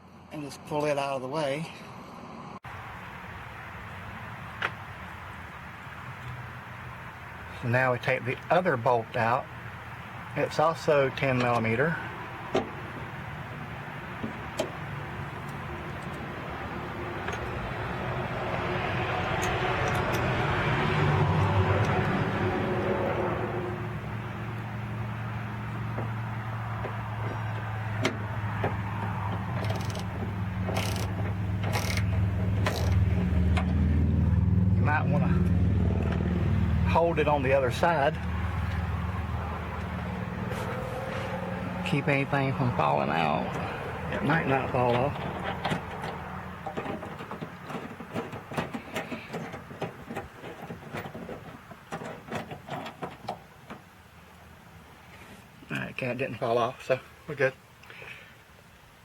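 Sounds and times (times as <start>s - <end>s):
engine hum: 1.7s - 55.9s
light metallic rattling: 19.1s - 20.4s, 25.0s - 34.3s, 43.4s - 54.4s
metal clicks: 19.2s - 20.4s, 26.8s - 33.8s
ratchet wrench ratcheting: 29.6s - 33.1s
hand tool clicking: 29.6s - 33.7s.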